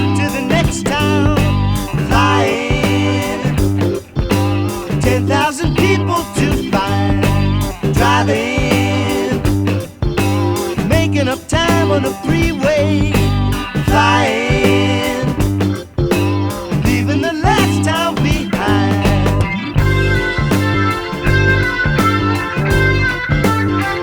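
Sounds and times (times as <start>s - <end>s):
bass guitar: 0.0s - 24.0s
drums: 0.0s - 24.0s
wavering melody line: 18.5s - 24.0s.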